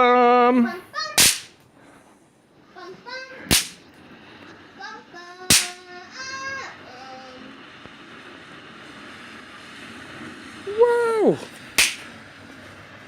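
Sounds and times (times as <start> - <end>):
bang snaps cracking: 1.2 - 1.6, 3.5 - 3.8, 5.5 - 5.8, 11.8 - 12.1.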